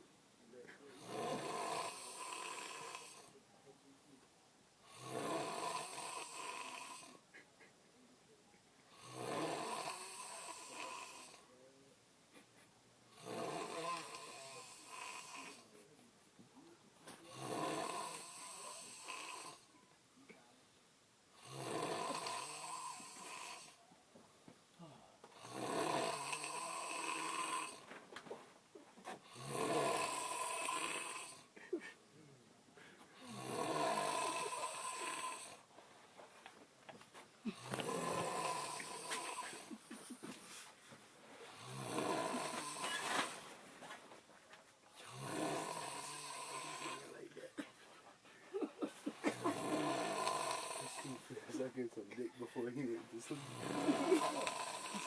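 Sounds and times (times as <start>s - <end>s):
person snoring: 0.9s - 3.4s, 4.8s - 7.2s, 8.9s - 11.5s, 13.1s - 15.8s, 17.1s - 19.7s, 21.4s - 23.8s, 25.4s - 27.9s, 29.2s - 31.6s, 33.2s - 35.7s, 37.4s - 40.6s, 41.4s - 43.6s, 45.0s - 47.3s, 49.2s - 51.7s, 52.6s - 55.0s.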